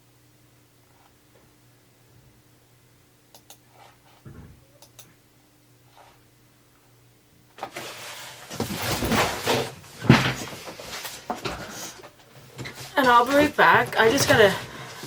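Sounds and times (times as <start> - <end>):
faint steady hum: 0.0 - 15.0
light clicks: 4.8 - 5.1
rustling and knocking of handled objects: 7.6 - 15.0.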